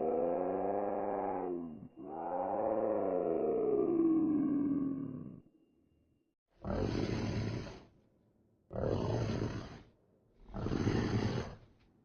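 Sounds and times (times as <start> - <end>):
creature roar: 0.0 - 5.4.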